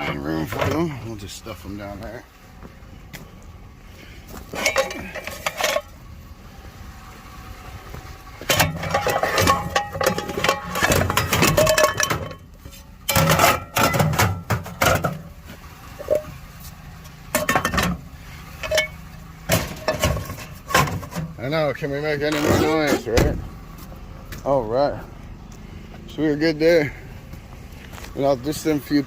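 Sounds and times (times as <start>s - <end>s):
metal pots and pans clanging: 4.6s - 5.9s, 8.5s - 15.3s, 16.0s - 16.3s, 17.3s - 18.0s, 18.6s - 21.3s.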